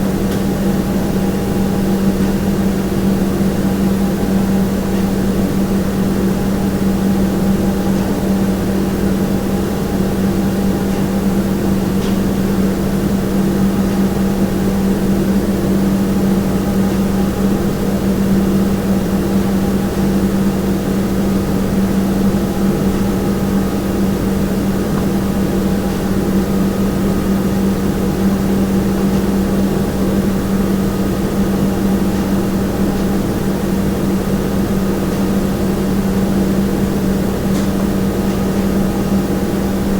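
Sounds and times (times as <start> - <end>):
machinery hum: 0.0 - 39.9.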